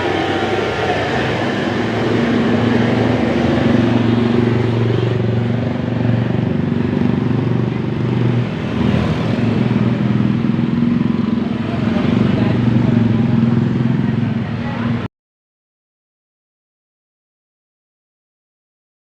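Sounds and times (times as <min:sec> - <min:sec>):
roadside traffic noise: 0:00.0 - 0:15.1
vehicle engine humming: 0:00.0 - 0:15.1.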